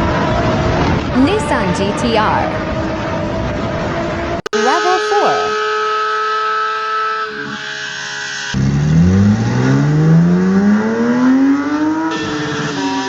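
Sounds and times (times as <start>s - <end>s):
sports car engine accelerating: 7.6s - 13.0s.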